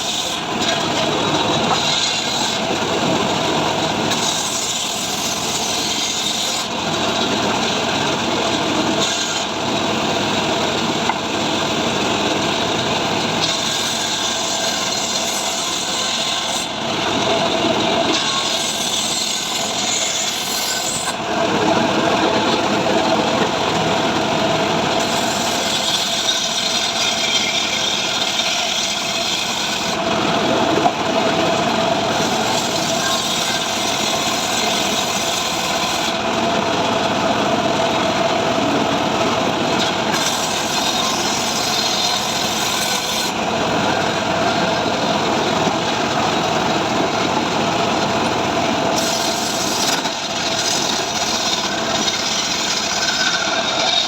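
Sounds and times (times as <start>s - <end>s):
engine saw cutting wood: 0.0s - 54.0s.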